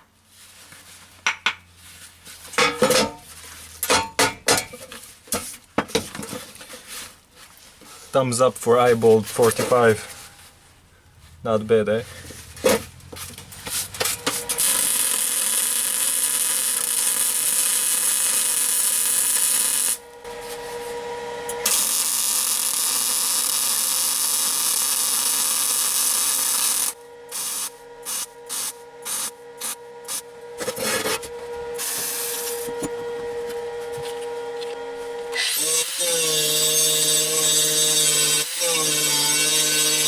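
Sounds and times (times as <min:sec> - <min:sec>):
welding crackling hiss: 0:14.2 - 0:20.0, 0:21.6 - 0:30.2.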